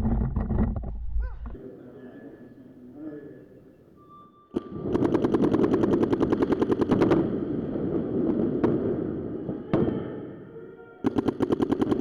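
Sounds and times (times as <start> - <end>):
paintball marker firing: 11.1 - 12.0.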